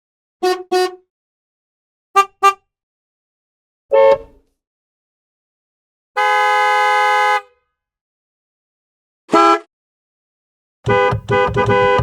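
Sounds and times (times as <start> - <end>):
short car horn toot: 2.2 - 2.6, 3.9 - 4.3, 10.9 - 12.0
car horn blast: 3.9 - 4.3, 6.2 - 7.5, 10.9 - 12.0.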